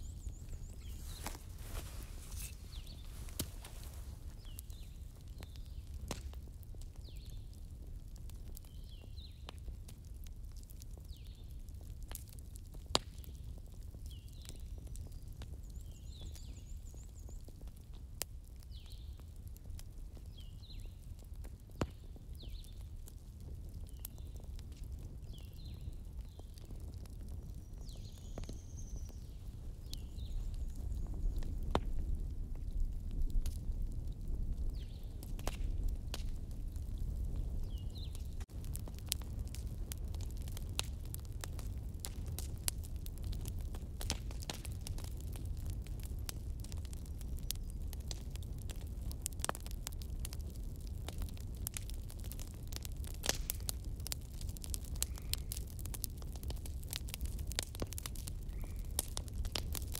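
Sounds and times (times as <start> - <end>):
birds chirping: 0.0 - 5.9
campfire crackling and popping: 0.0 - 59.9.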